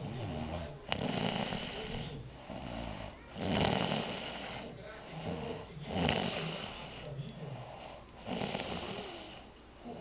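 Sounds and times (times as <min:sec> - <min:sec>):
woman snoring: 0:00.0 - 0:04.6, 0:08.2 - 0:10.0.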